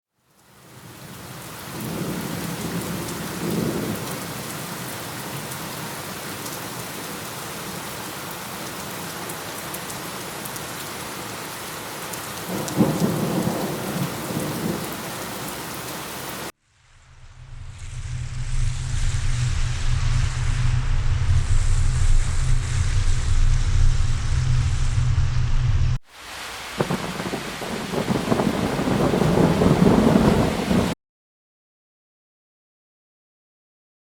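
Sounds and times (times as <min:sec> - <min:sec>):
heavy rain pouring: 0:00.4 - 0:16.6, 0:18.2 - 0:31.0
low rolls of thunder: 0:01.7 - 0:04.8, 0:12.5 - 0:15.7, 0:26.7 - 0:31.0.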